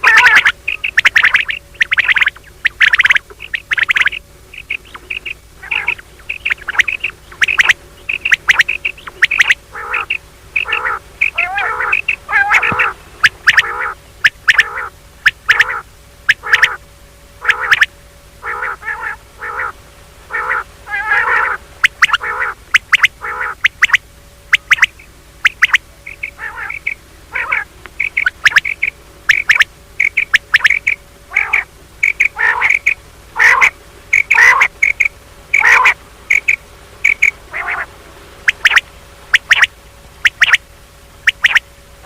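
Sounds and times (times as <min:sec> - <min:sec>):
quail short sharp calls: 0:00.0 - 0:16.8, 0:17.4 - 0:40.6, 0:41.2 - 0:41.6.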